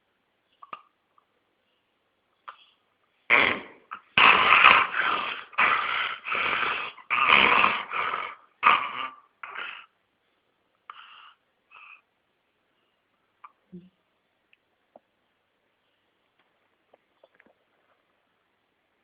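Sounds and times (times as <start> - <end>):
pet snoring: 3.3 - 9.9.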